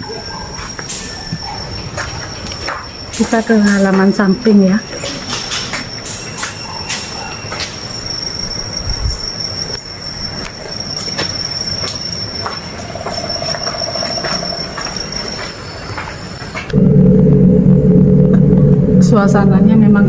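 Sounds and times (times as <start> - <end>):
high-pitched insect drone: 0.0 - 20.0
footsteps clicking: 0.4 - 4.3, 4.9 - 7.9, 10.4 - 16.8
loud low hum: 16.7 - 20.0.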